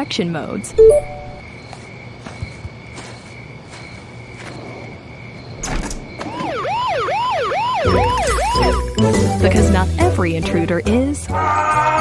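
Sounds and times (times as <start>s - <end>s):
security alarm siren wailing: 6.2s - 9.7s.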